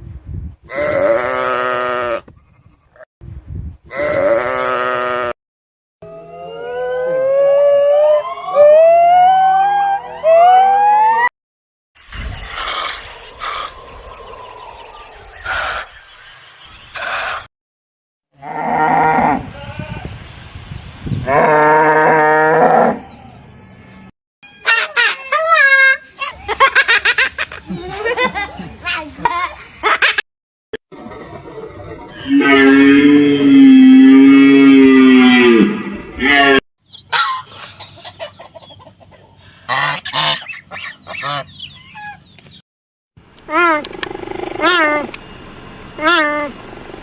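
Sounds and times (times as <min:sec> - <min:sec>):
farm animal calling: 0:12.5 - 0:16.0, 0:35.1 - 0:42.4, 0:43.5 - 0:45.2, 0:45.9 - 0:46.6
geese honking: 0:37.1 - 0:38.4, 0:39.4 - 0:42.2.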